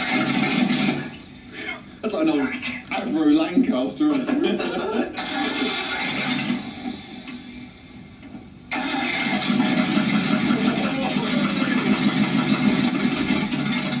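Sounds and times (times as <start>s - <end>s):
engine running with pulsing beat: 8.8s - 14.0s.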